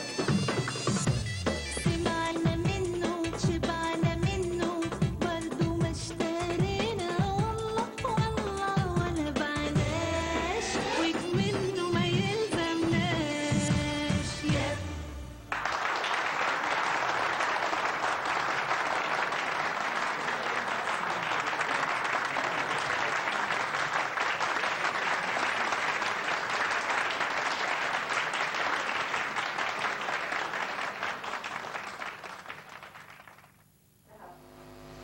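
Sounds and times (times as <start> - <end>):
audience applause: 15.5 - 33.6.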